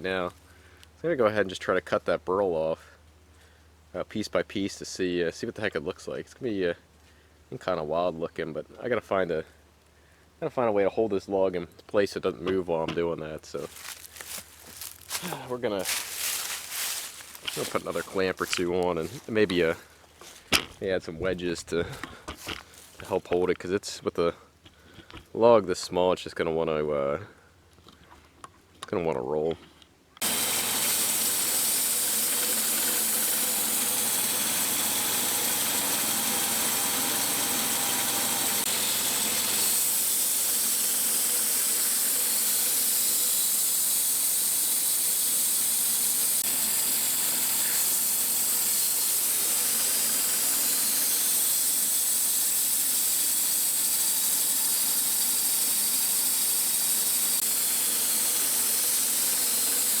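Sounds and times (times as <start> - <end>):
sawmill blade cutting wood: 13.6 - 19.7, 30.2 - 60.0.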